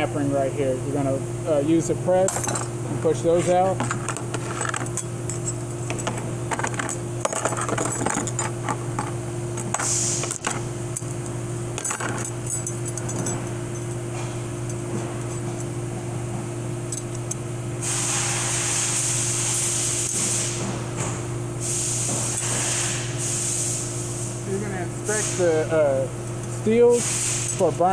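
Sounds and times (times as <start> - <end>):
steady low hum: 0.0 - 27.9
metal parts clinking: 2.2 - 15.8, 16.8 - 17.4
loud hissing spray: 17.8 - 20.5, 26.9 - 27.4.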